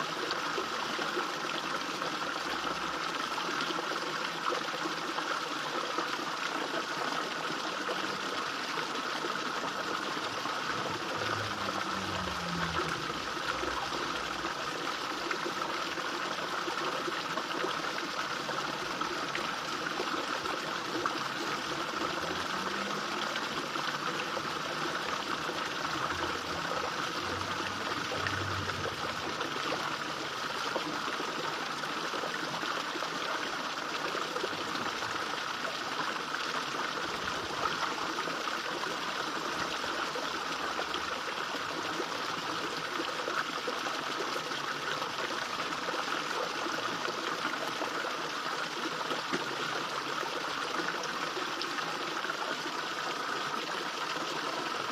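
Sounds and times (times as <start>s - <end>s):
waterfall splashing into pond: 0.0s - 54.9s
faint low drone: 10.2s - 14.9s, 21.0s - 30.3s.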